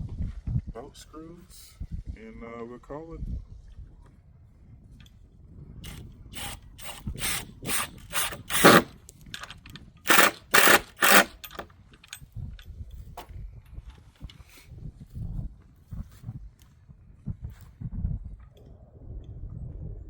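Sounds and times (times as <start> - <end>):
rasping strokes on wood: 5.9 - 8.9, 10.1 - 11.6.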